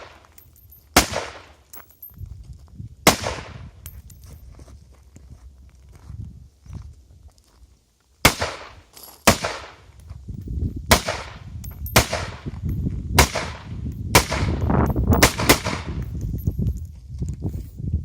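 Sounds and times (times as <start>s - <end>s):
rifle shots: 10.9s - 12.4s, 13.2s - 14.6s, 15.2s - 16.0s.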